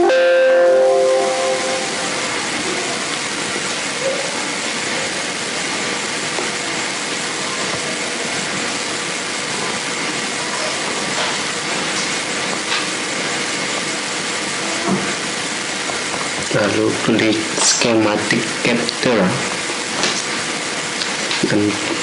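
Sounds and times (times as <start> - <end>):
faint steady tones: 0.0 - 3.0
loud steady hiss: 0.0 - 22.0.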